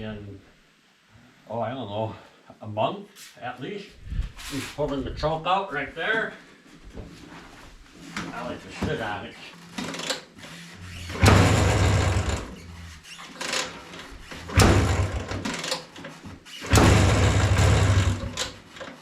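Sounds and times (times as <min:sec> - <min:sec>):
scooter engine turning over and firing: 0:10.9 - 0:12.6, 0:13.4 - 0:15.9, 0:16.6 - 0:18.8.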